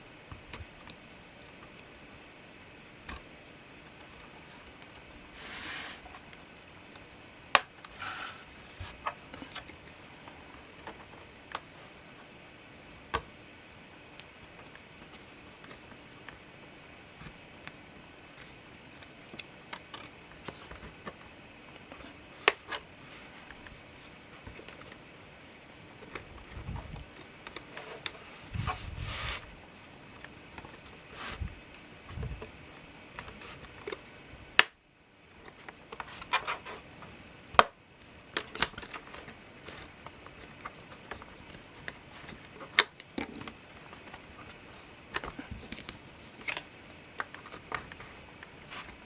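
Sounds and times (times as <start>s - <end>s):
scraping rustles: 5.3s - 6.2s, 7.9s - 10.0s, 27.6s - 29.6s
short scraping rustles: 5.4s - 6.1s, 7.9s - 9.0s.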